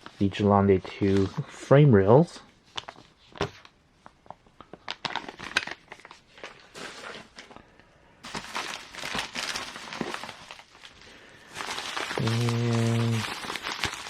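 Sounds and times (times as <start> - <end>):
plastic packaging crinkling: 4.7 - 7.5, 8.2 - 14.0.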